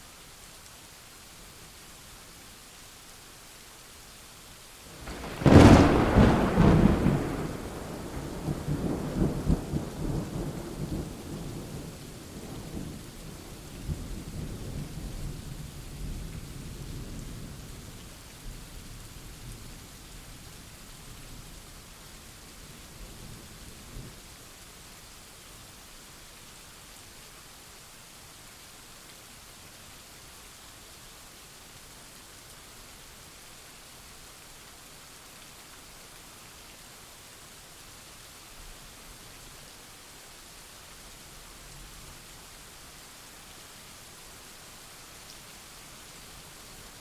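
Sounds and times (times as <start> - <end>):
steady rain falling: 0.0 - 47.0
thunderclap rolling rumble: 5.0 - 11.8.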